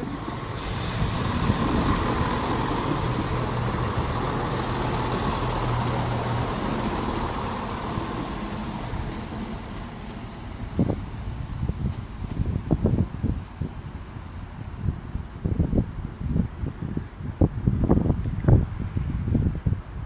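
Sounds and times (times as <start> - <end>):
diesel train engine hum: 0.0 - 17.0
train rumbling and hissing: 0.0 - 18.1.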